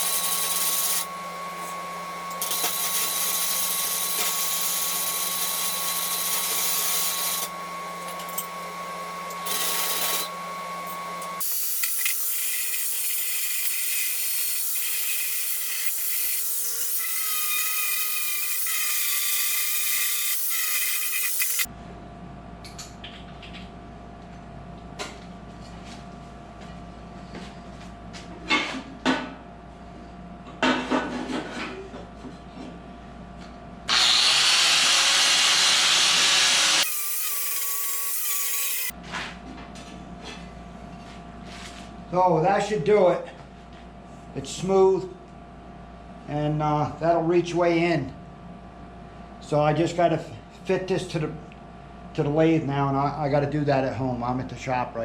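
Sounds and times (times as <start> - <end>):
power grinder whining on steel: 0.0 - 21.7, 33.9 - 38.9.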